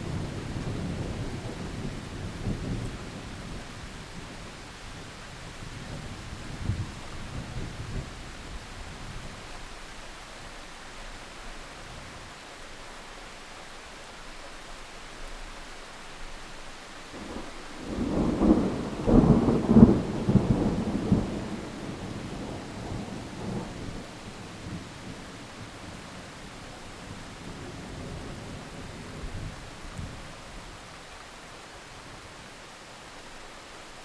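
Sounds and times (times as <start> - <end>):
steady rain: 0.0 - 34.0
thunder rumbling: 17.2 - 26.2.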